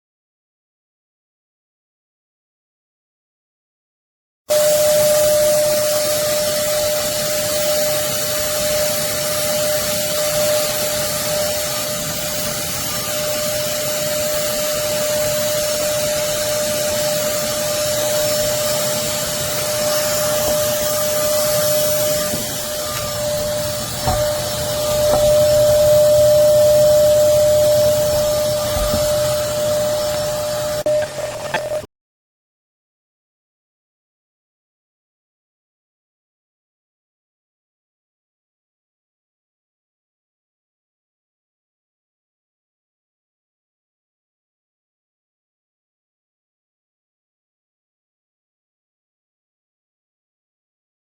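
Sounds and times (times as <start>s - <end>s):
vacuum cleaner running: 4.5s - 31.9s
knocks: 24.0s - 24.4s.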